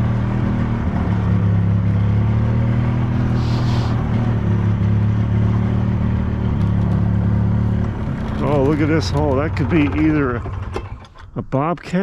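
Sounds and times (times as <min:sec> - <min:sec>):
farm vehicle engine droning: 0:00.0 - 0:12.0
brief hiss: 0:03.3 - 0:04.0.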